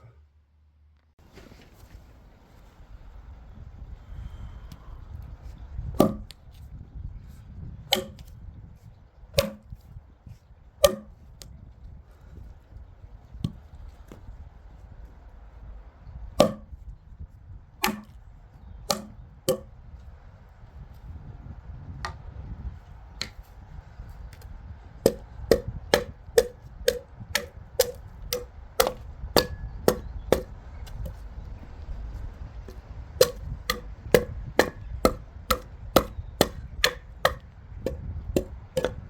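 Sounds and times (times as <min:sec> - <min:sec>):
axe chopping wood: 0:06.0 - 0:06.4, 0:07.9 - 0:08.3, 0:09.4 - 0:09.8, 0:10.8 - 0:11.2, 0:16.4 - 0:16.8, 0:17.8 - 0:18.2, 0:18.9 - 0:19.7, 0:24.4 - 0:31.2, 0:32.7 - 0:39.0.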